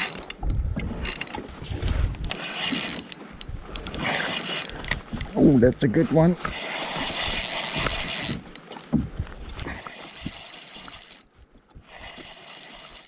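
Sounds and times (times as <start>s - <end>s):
fishing reel whirring: 0.0s - 5.4s, 6.4s - 8.8s, 9.6s - 11.3s, 11.9s - 13.0s
reel clicks and handling noise: 0.0s - 13.0s.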